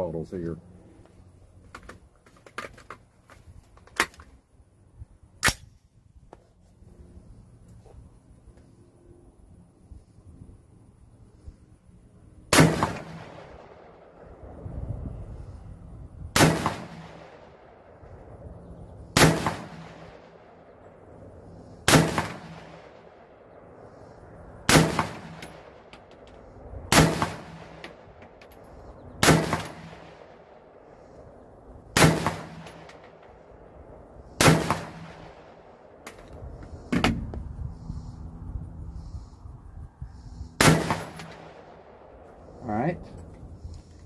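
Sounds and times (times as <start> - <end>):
rifle shots with ringing echo: 12.5 - 14.5, 16.3 - 18.4, 19.0 - 23.9, 24.6 - 31.2, 31.9 - 36.1, 40.6 - 42.6.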